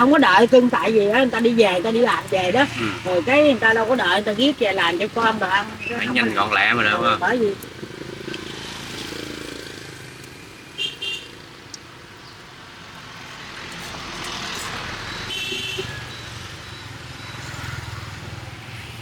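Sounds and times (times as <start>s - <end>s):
street traffic passing: 0.0s - 19.0s
vehicle horn beeping: 10.8s - 11.3s, 15.1s - 16.2s.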